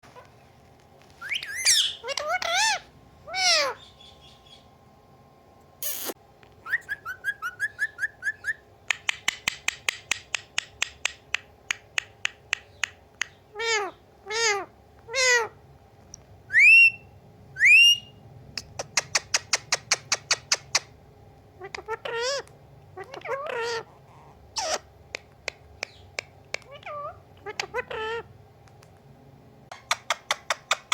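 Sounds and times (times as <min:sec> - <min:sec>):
parrot chirps and warbles: 0:01.1 - 0:04.8, 0:05.8 - 0:15.6, 0:16.5 - 0:21.0, 0:21.6 - 0:28.8, 0:29.7 - 0:30.9
parrot whistles: 0:01.2 - 0:02.8, 0:05.8 - 0:08.6, 0:16.5 - 0:18.2
parrot meowing: 0:01.2 - 0:03.9, 0:13.5 - 0:15.6, 0:21.6 - 0:24.8, 0:26.6 - 0:28.3
parrot squawk: 0:01.2 - 0:03.9, 0:13.5 - 0:15.6, 0:21.6 - 0:24.9, 0:26.6 - 0:28.3.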